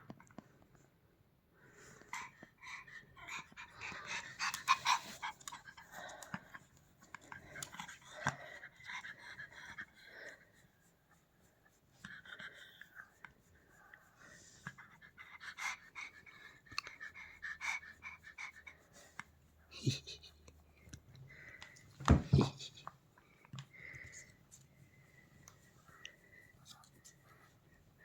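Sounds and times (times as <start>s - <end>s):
dog panting: 1.8s - 21.7s.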